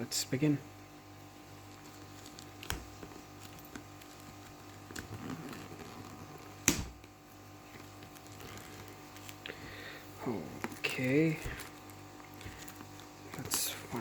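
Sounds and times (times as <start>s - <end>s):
steady low hum: 0.0s - 14.0s
packaging scraping: 1.7s - 6.6s, 7.8s - 9.7s.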